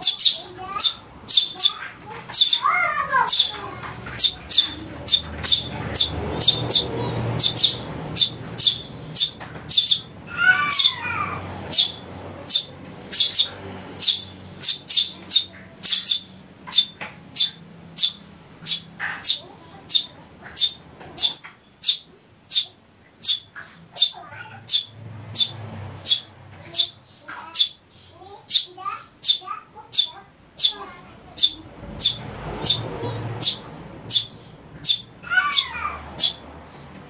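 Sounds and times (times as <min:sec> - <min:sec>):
bird chicks chirping: 0:00.0 - 0:37.0.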